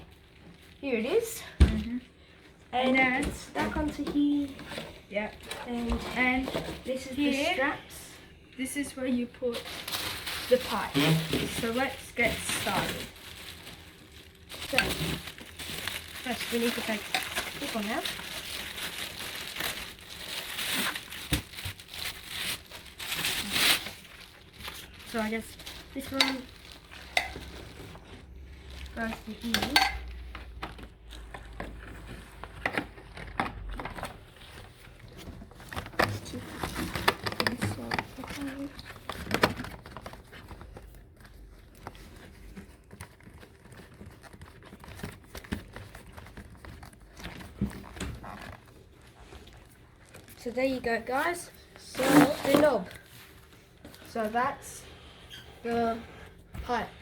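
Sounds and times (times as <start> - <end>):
packaging crinkling: 9.4 - 54.0.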